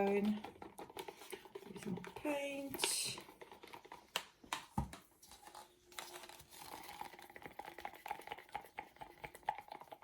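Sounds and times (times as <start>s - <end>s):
stick stirring paint in a cup: 0.0s - 4.6s, 5.2s - 10.0s.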